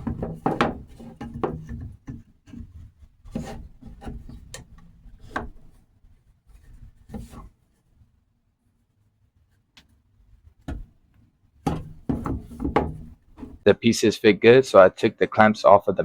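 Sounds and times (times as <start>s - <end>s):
wooden knocks: 0.0s - 2.2s, 10.6s - 11.0s, 11.6s - 13.6s
wood rubbing and scraping: 0.0s - 5.8s, 6.5s - 7.6s, 11.6s - 13.7s.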